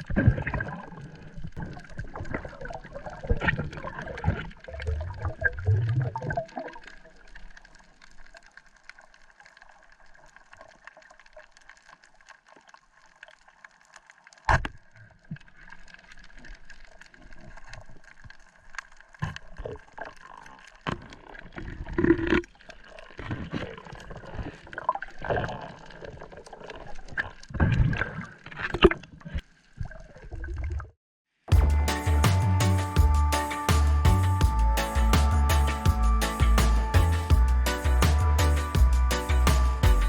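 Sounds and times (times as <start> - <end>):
water splashing and gurgling: 0.0 - 31.0
knocks and deep thumps: 31.5 - 40.0.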